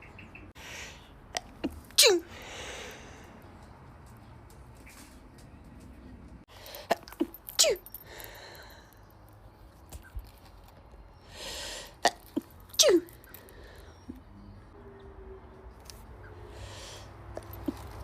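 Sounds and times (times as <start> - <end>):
woman sneezing: 2.0 - 2.3, 7.2 - 7.9
woman drawing in breath: 2.3 - 3.4, 8.0 - 9.1.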